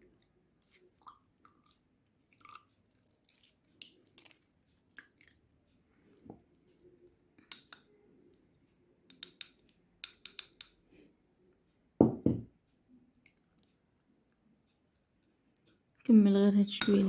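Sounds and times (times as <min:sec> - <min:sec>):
metal utensils clinking glass: 0:16.8 - 0:17.0.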